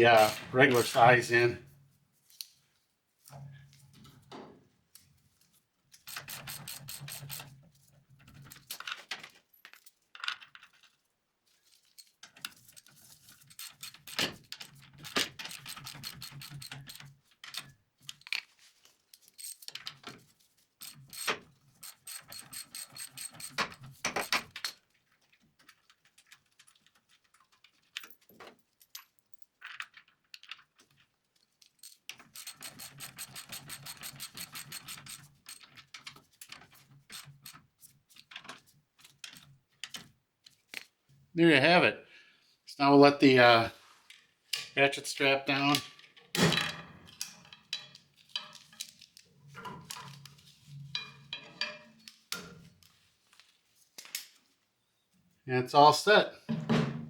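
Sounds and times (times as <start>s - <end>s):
metallic clinks of bolts and tools: 0.1s - 0.9s, 6.0s - 7.5s, 12.0s - 18.4s, 19.2s - 20.1s, 20.8s - 24.8s, 31.7s - 37.6s
socket ratchet clicking: 0.2s - 0.5s, 6.1s - 7.5s, 13.5s - 17.0s, 20.8s - 24.7s, 31.8s - 35.7s, 37.1s - 37.6s.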